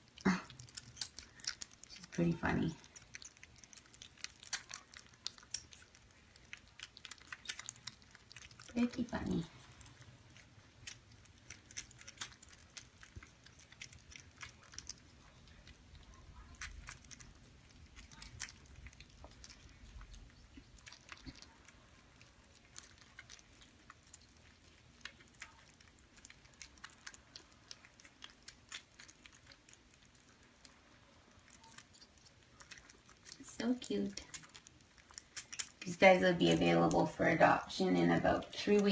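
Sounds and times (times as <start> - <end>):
kittens crunching dry food: 0.0 - 38.9.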